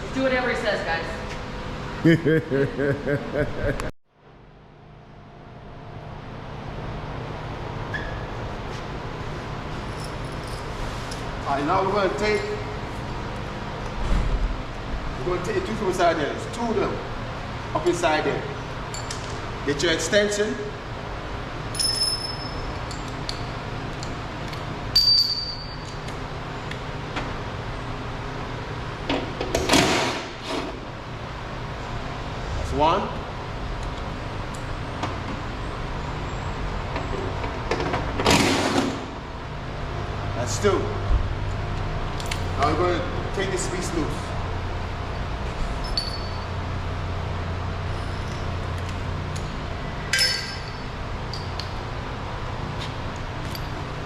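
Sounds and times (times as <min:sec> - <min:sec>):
steady low hum: 0:00.0 - 0:54.0
hand tools clinking: 0:25.0 - 0:26.1, 0:45.8 - 0:46.4, 0:50.1 - 0:51.7.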